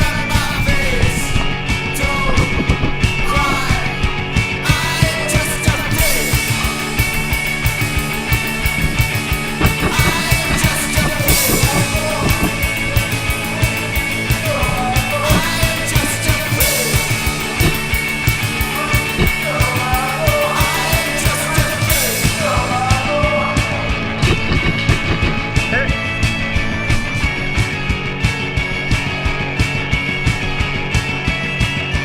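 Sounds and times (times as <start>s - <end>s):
person singing: 0.0s - 26.2s
fast driving drum beat: 0.0s - 32.0s
loud rock music: 0.0s - 32.0s.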